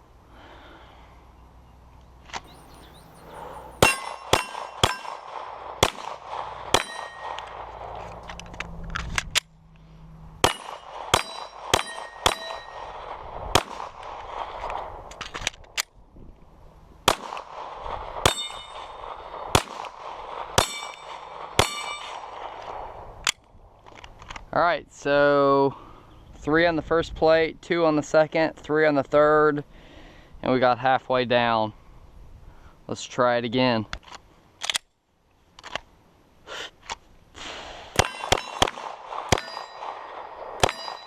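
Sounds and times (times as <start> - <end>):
steel target plate clanging: 2.5 - 5.3, 6.8 - 7.5, 10.5 - 12.8, 38.0 - 40.0, 40.6 - 41.0
pistol shots: 2.5 - 7.7, 10.4 - 14.0, 17.1 - 22.3, 38.0 - 41.0.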